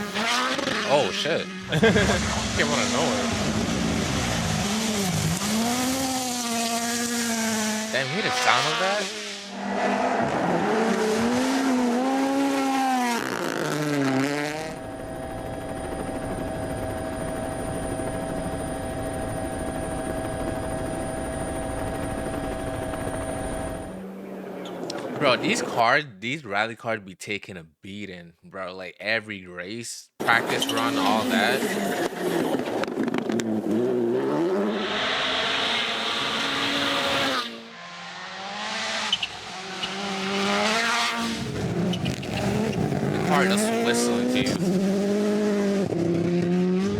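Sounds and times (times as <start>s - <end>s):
car engine revving: 0.0s - 25.2s, 30.2s - 46.9s
loud rushing noise: 34.6s - 37.5s.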